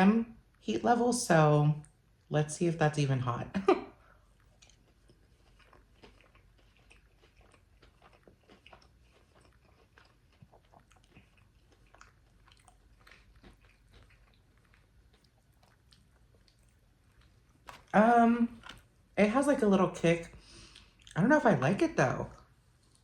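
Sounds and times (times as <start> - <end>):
person chewing crispy food: 4.0 - 19.2, 20.0 - 21.2, 22.4 - 23.0.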